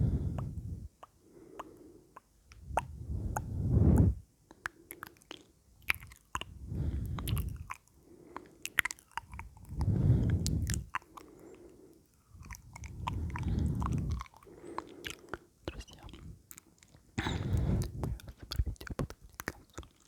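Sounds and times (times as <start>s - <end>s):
heavy breaths into microphone: 0.0s - 4.2s, 6.5s - 8.6s, 9.6s - 15.4s, 17.2s - 18.5s
wet lip and tongue clicks: 0.3s - 20.0s.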